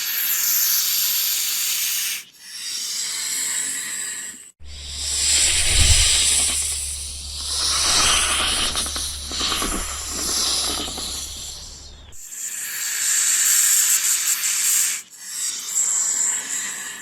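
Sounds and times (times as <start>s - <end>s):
snake hissing: 0.1s - 17.0s
low steady hum: 4.6s - 12.2s.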